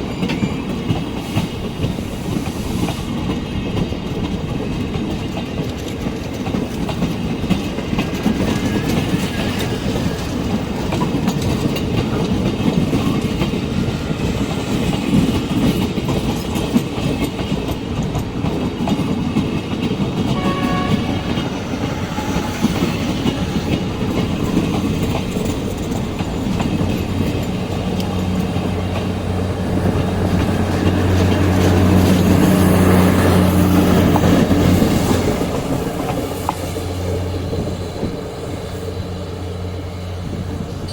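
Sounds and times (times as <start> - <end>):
train wheels clattering over rails: 0.0 - 40.9
train horn: 20.2 - 24.0.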